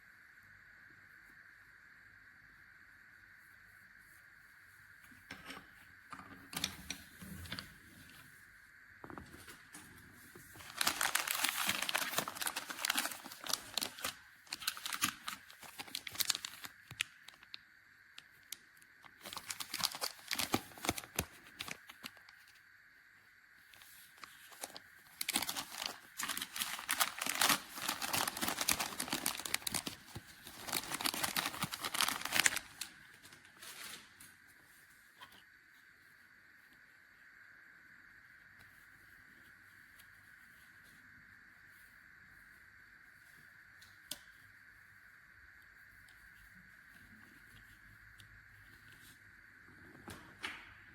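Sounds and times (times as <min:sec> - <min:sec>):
plastic packaging crinkling: 0:10.4 - 0:17.6, 0:18.2 - 0:22.5, 0:23.8 - 0:34.3.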